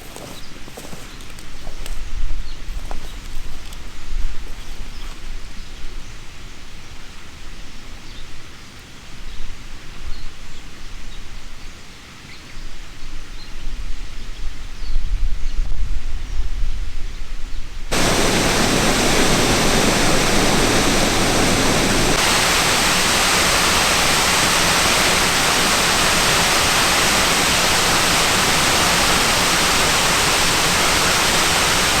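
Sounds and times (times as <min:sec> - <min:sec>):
steady hiss: 0:17.9 - 0:32.0.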